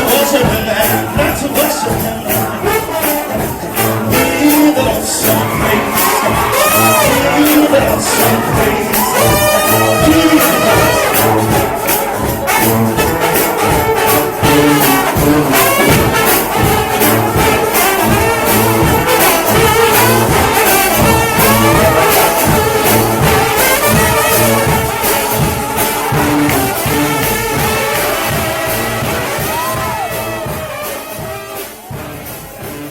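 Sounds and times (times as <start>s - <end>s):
gospel band playing: 0.0s - 32.9s.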